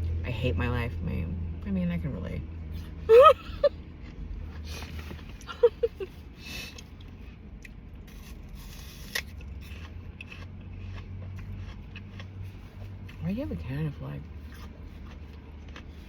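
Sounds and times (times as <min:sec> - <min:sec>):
steady low hum: 0:00.0 - 0:16.0
person humming: 0:03.1 - 0:03.7
crunchy bites and chewing: 0:06.8 - 0:13.3, 0:14.3 - 0:16.0.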